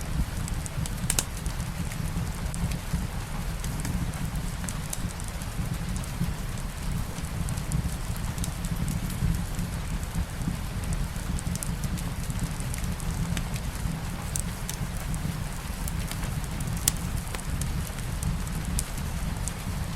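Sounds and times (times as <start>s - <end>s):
soft rain: 0.0s - 19.9s
fireplace crackling: 2.6s - 8.8s, 10.9s - 19.8s.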